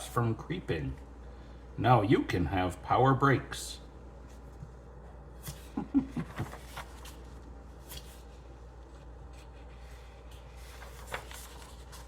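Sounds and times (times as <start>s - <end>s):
book pages turning: 5.4s - 12.0s.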